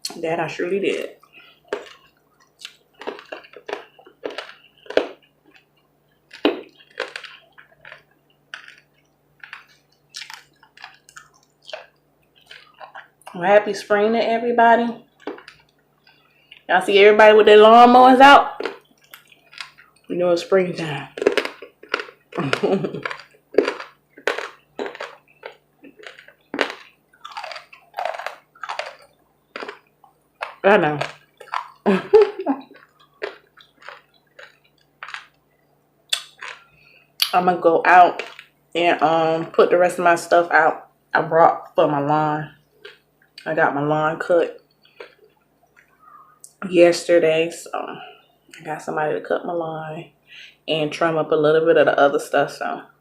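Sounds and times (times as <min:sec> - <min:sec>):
person chewing food: 0:01.0 - 0:13.3, 0:15.0 - 0:16.7, 0:18.5 - 0:20.1, 0:20.8 - 0:37.4, 0:38.2 - 0:38.6, 0:42.6 - 0:43.4, 0:44.6 - 0:46.5.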